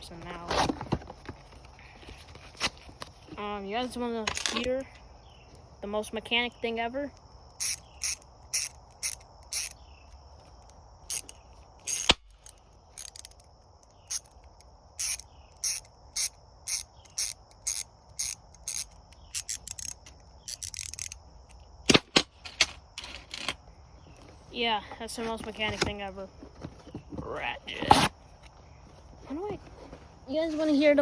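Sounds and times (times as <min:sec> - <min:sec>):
ratchet wrench clicking: 0:07.6 - 0:09.8, 0:11.1 - 0:21.6.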